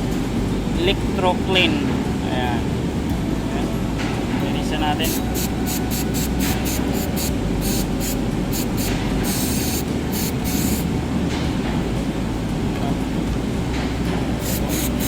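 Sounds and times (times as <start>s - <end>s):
steady low rumble: 0.0s - 15.0s
aerosol spray bursts: 5.1s - 10.9s, 14.4s - 15.0s.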